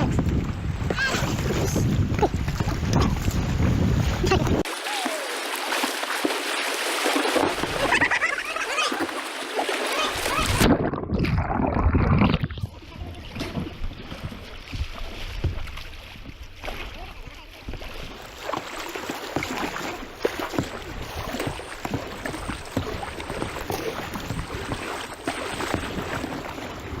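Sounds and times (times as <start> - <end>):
river water rushing: 4.6 - 10.6.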